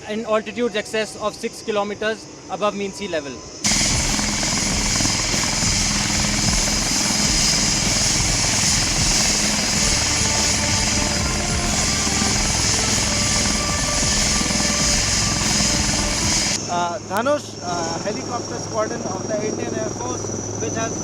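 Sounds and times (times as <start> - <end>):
helicopter rotor and engine noise: 0.6 - 21.0
low hum: 3.7 - 16.7.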